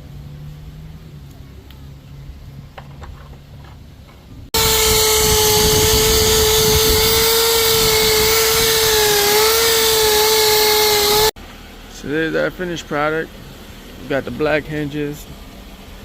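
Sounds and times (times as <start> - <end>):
wire wheel grinding rusty metal: 4.6 - 11.3.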